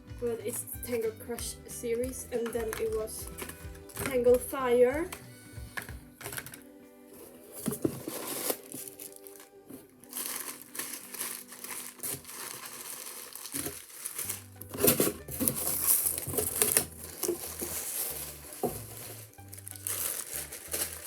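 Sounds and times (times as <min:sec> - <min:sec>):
packaging wrapping crinkling: 0:07.2 - 0:21.0.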